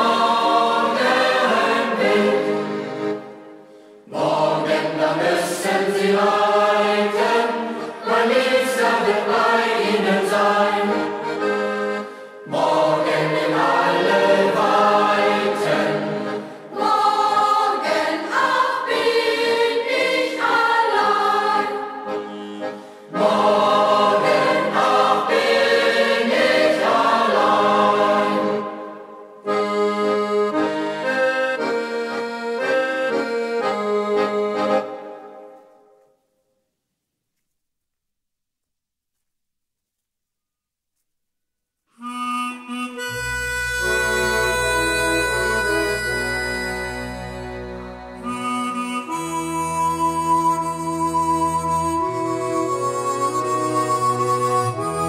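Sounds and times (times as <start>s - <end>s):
young voices singing in chorus: 0.0s - 3.0s, 4.1s - 11.4s, 12.5s - 29.0s
accordion playing: 0.0s - 35.9s, 42.0s - 55.0s.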